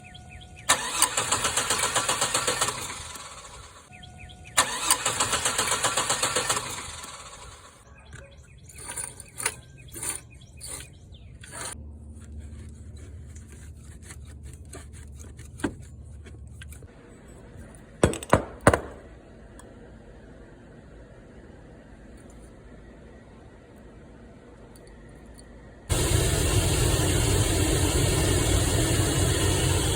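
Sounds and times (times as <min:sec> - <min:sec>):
engine turning over: 0:00.6 - 0:03.9, 0:04.6 - 0:07.8, 0:25.9 - 0:29.9
low hum: 0:19.0 - 0:29.9.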